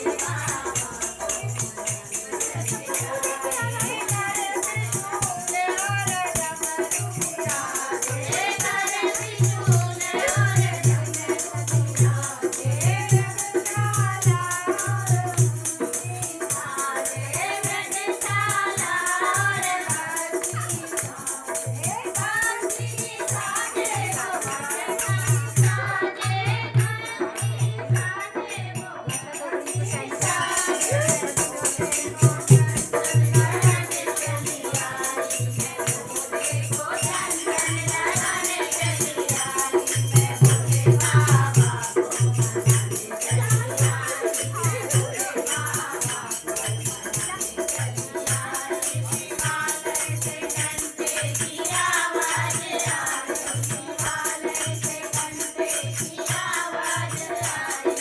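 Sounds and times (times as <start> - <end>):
person singing: 29.4 - 48.3
shaker rattling: 29.6 - 58.0.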